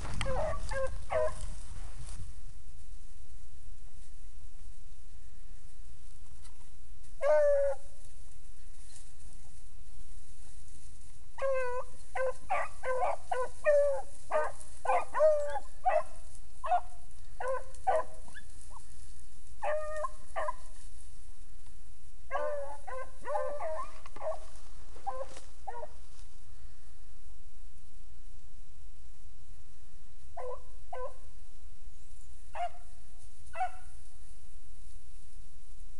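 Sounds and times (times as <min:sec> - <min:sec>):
hounds baying: 0:00.0 - 0:01.5, 0:07.2 - 0:07.9, 0:11.4 - 0:18.9, 0:19.6 - 0:20.8, 0:22.3 - 0:26.0, 0:30.4 - 0:31.2, 0:32.5 - 0:32.9, 0:33.5 - 0:33.9.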